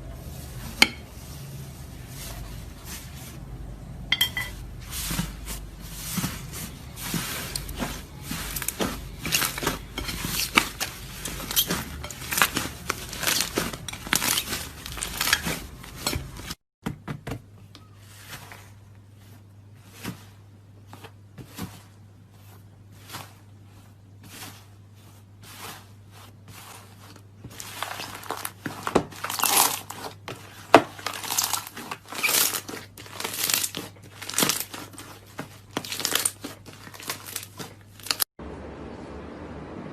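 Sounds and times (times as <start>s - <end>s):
crunchy slime crackling: 4.8s - 16.6s, 27.4s - 38.3s.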